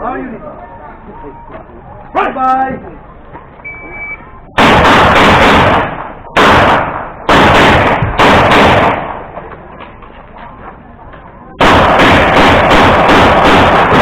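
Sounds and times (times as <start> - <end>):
short high beep: 3.6 - 4.4
loud echoing gunshots: 4.5 - 9.4, 11.6 - 14.0.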